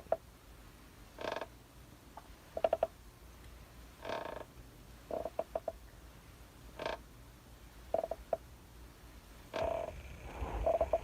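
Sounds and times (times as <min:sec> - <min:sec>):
wooden rocking chair creaking: 0:01.2 - 0:01.5, 0:04.0 - 0:04.5, 0:06.8 - 0:07.0, 0:09.5 - 0:11.0.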